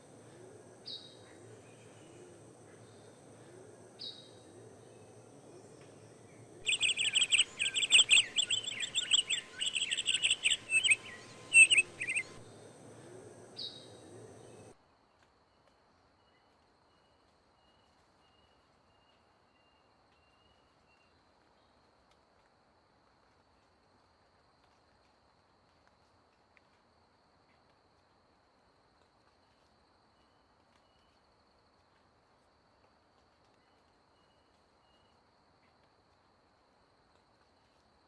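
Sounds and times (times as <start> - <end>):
bird chirping: 0.0 - 14.7
steady background hiss: 0.0 - 14.8.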